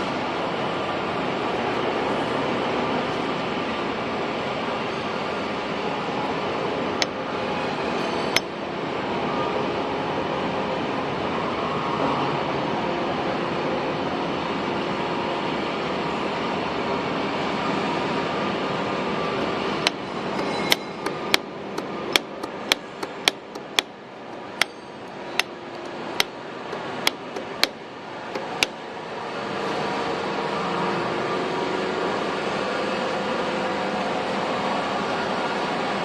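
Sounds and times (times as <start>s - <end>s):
steady machinery noise: 19.2s - 28.7s
sharp metallic clanks: 19.3s - 27.8s.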